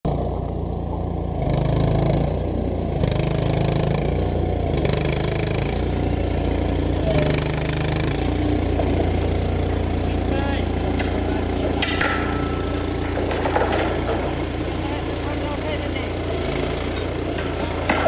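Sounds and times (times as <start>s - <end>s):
engine running: 0.1s - 18.0s.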